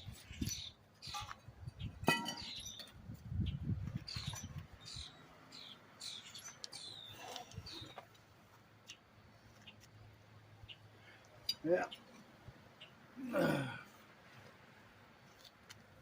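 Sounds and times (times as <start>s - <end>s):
sharp metallic clink: 2.1s - 2.7s.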